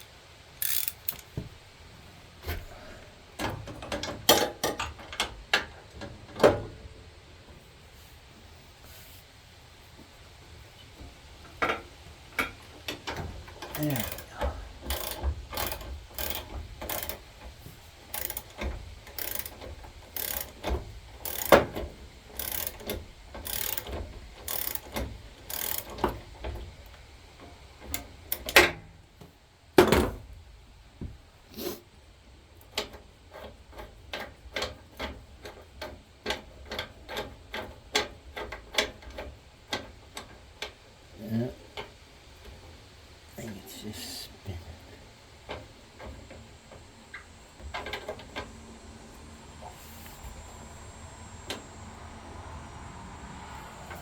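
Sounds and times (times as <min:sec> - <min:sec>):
ratchet wrench clicking: 0:00.6 - 0:01.3, 0:13.6 - 0:27.0, 0:27.9 - 0:28.6.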